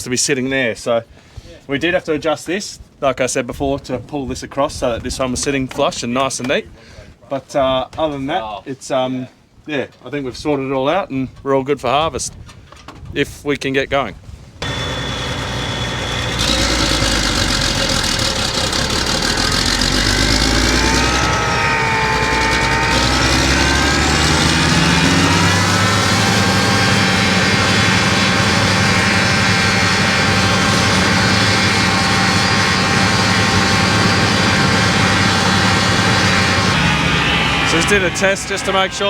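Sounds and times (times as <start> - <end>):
combine harvester running: 14.6 - 39.0
rising machine whine: 14.6 - 39.0.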